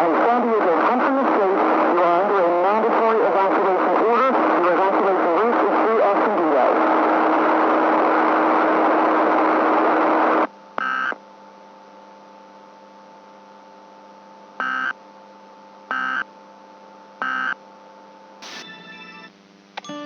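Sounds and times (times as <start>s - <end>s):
quiet electronic hum: 0.0s - 20.0s
loud hiss with low tone: 18.4s - 20.0s.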